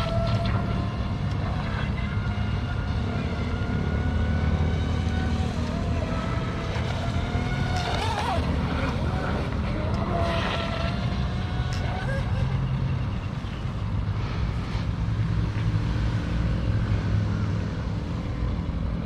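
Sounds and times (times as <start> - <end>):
electric motor high whine: 0.0 - 15.0.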